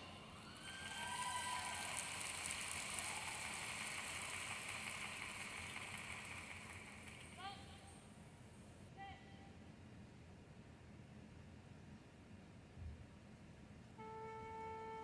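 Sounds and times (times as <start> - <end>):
audience applauding and cheering: 0.0 - 7.5.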